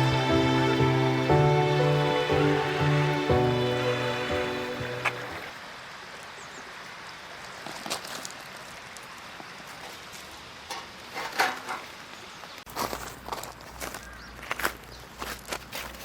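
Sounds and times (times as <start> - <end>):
steady background hiss: 0.0 - 12.6.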